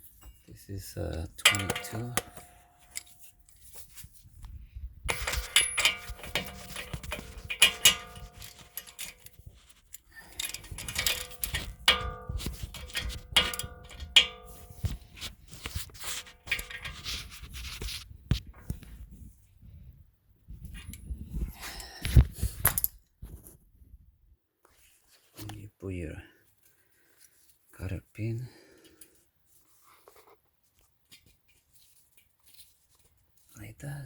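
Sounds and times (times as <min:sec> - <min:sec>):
wrench clicking metallically: 0:01.3 - 0:03.1, 0:05.1 - 0:09.4, 0:10.2 - 0:14.8.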